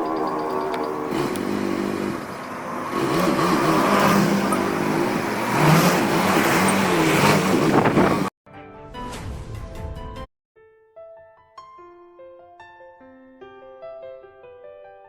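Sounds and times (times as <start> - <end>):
vehicle engines passing and revving: 0.0 - 8.3.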